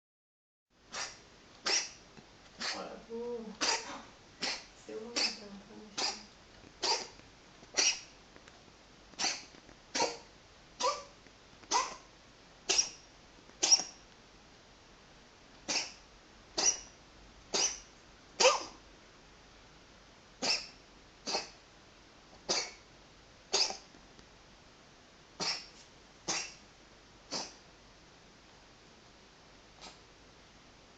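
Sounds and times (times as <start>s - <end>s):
cat coughing: 0.9s - 2.0s, 2.6s - 2.9s, 3.6s - 7.1s, 7.7s - 8.1s, 9.2s - 11.1s, 11.7s - 12.1s, 12.7s - 13.0s, 13.6s - 13.9s, 15.7s - 16.0s, 16.6s - 16.9s, 17.5s - 18.8s, 20.4s - 21.6s, 22.4s - 22.8s, 23.5s - 23.9s, 25.4s - 26.6s, 27.3s - 27.6s.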